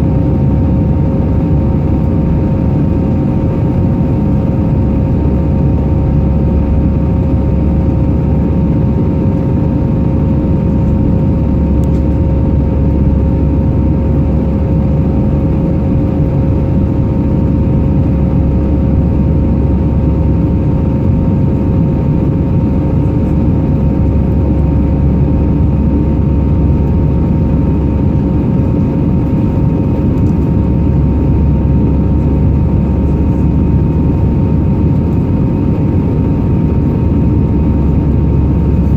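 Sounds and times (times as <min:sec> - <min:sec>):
aircraft cabin rumble: 0:00.0 - 0:38.9
engine whine: 0:00.0 - 0:38.9.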